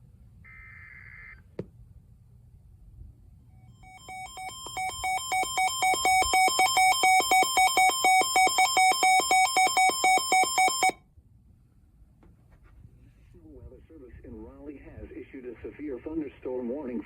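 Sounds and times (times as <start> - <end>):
two-pitch electronic alert beeps: 3.6 - 11.0.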